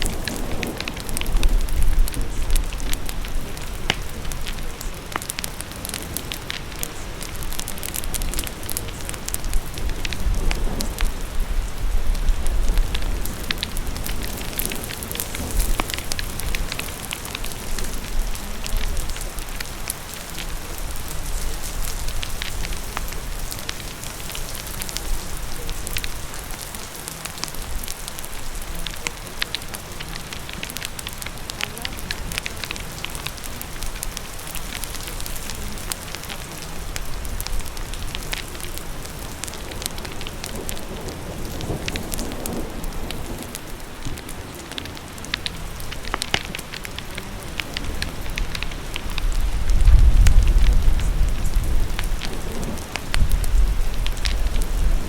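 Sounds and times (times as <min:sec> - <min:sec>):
steady rain: 0:00.0 - 0:55.0
wood fire crackling: 0:00.0 - 0:55.0
deep low rumble: 0:46.9 - 0:55.0.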